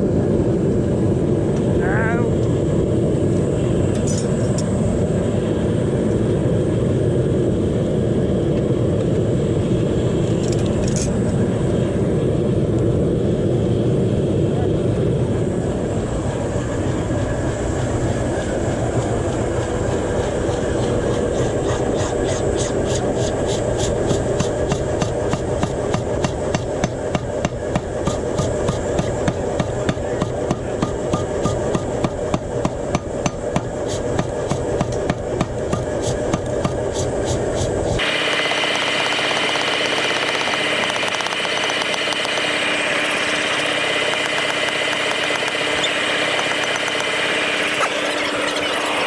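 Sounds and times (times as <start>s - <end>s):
steady hum: 14.8s - 48.1s
hammer blows on hot steel: 17.5s - 42.8s.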